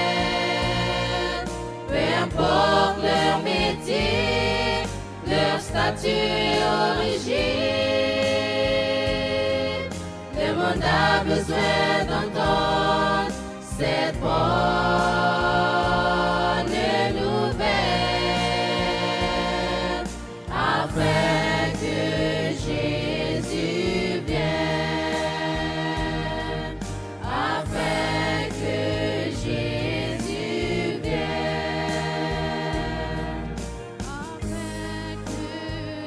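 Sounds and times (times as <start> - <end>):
choir singing: 0.0 - 36.0
low accompaniment: 0.0 - 36.0.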